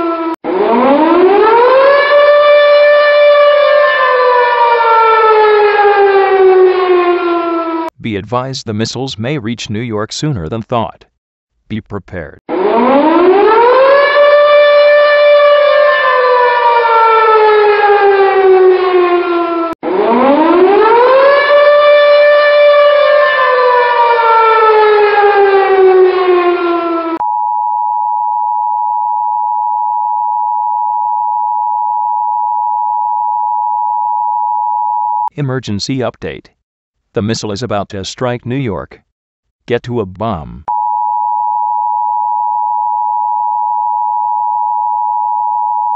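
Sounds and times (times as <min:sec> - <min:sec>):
civil defense siren wailing: 0:00.0 - 0:07.9, 0:12.5 - 0:27.2.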